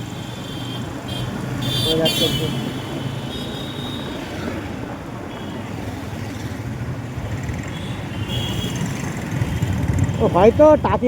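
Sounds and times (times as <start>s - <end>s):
motorcycle wind and engine rumble: 0.8s - 11.0s.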